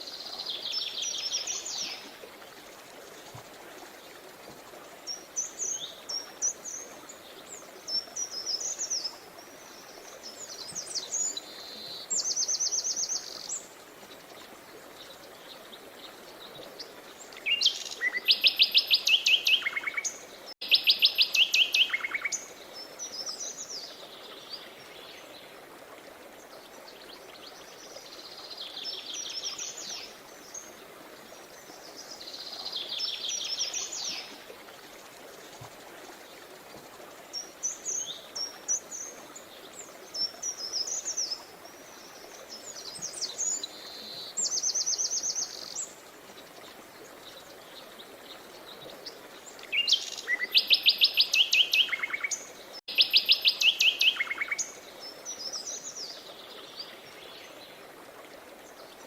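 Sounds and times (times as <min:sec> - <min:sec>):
songbirds singing trills: 0:47.2 - 0:57.7.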